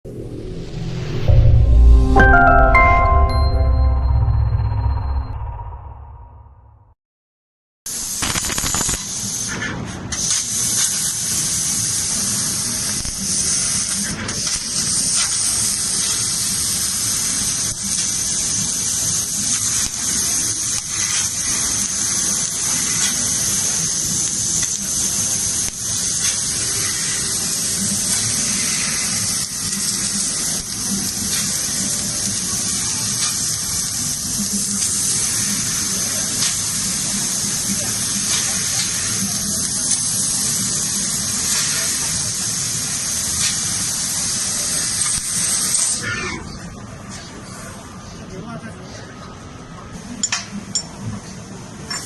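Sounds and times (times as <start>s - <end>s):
laser cutter hissing: 10.2s - 46.0s.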